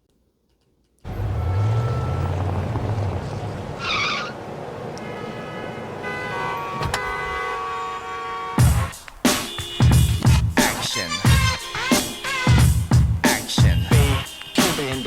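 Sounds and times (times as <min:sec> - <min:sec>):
road noise: 0:01.0 - 0:15.0
car engine running: 0:01.1 - 0:06.0.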